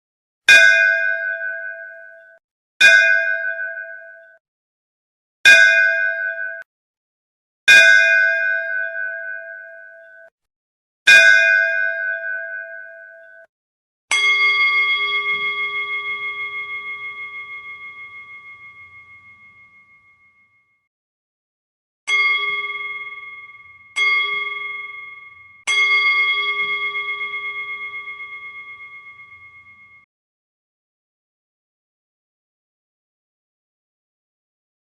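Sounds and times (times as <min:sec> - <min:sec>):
temple bell ringing: 0:14.1 - 0:20.5, 0:22.1 - 0:30.1.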